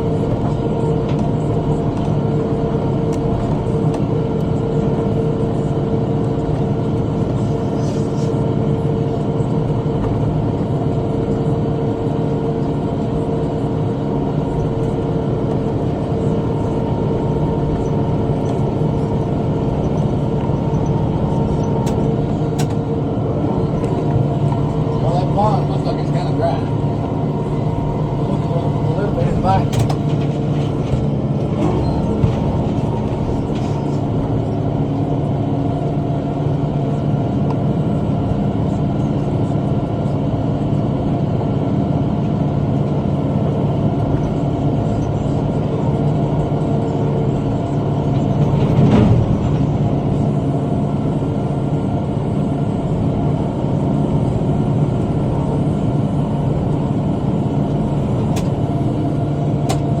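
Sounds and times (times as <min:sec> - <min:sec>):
tractor engine running: 0:00.0 - 1:00.0.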